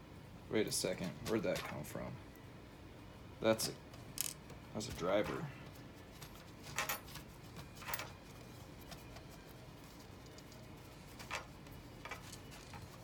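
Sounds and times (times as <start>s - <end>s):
small lock parts clicking: 4.2s - 4.4s.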